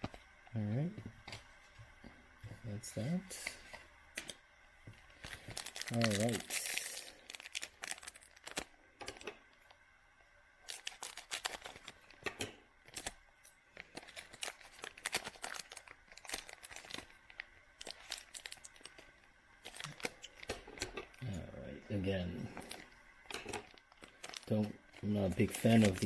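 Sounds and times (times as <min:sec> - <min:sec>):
foil wrapper crinkling and tearing: 0:05.1 - 0:09.7, 0:10.6 - 0:21.2, 0:22.5 - 0:26.0.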